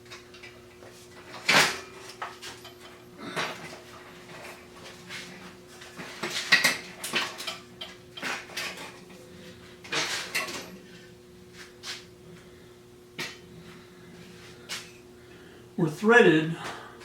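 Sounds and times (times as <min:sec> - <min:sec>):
metal tools clinking and scraping: 0:01.3 - 0:05.0, 0:06.0 - 0:09.2, 0:09.9 - 0:11.0.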